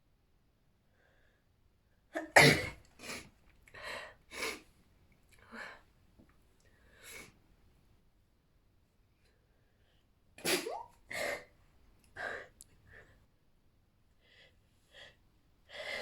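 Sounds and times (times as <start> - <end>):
breathing: 0.9 - 1.5, 3.8 - 4.6, 6.7 - 7.4, 9.3 - 10.1, 14.2 - 16.0
woman sneezing: 2.2 - 3.2, 10.4 - 11.4.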